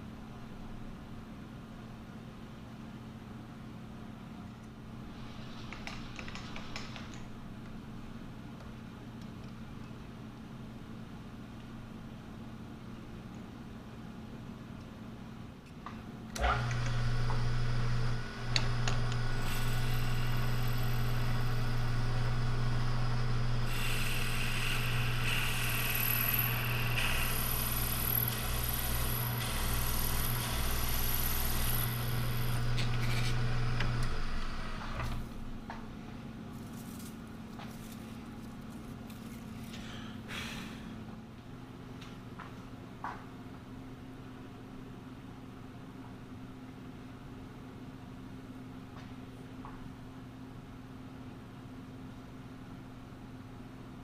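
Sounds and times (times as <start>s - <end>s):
machine motor humming: 16.4s - 35.4s
hissing grinding noise: 16.6s - 35.0s.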